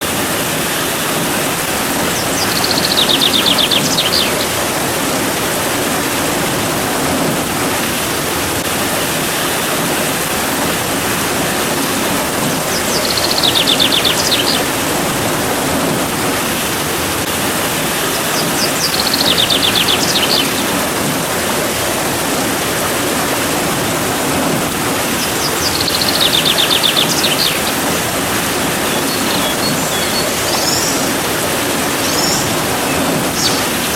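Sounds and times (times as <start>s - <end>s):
steady rain hiss: 0.0s - 33.9s
bird trilling: 2.0s - 4.8s, 12.7s - 14.8s, 18.2s - 20.8s, 25.2s - 33.8s.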